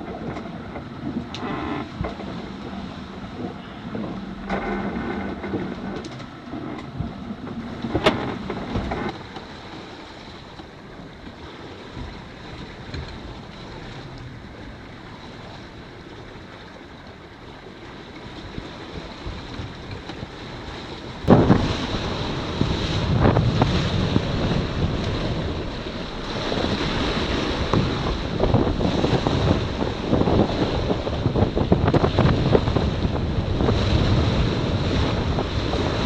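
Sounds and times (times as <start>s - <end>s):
wind buffeting microphone: 0.0s - 9.4s, 18.2s - 36.0s
rush of wind and water: 0.0s - 36.0s
sea noise: 0.0s - 36.0s.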